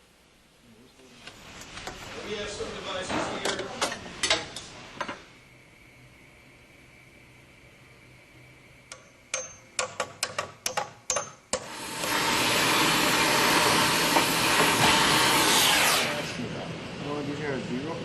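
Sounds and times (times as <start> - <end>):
loud steady hiss: 0.0 - 18.0
sharp metallic clicks: 8.9 - 11.6.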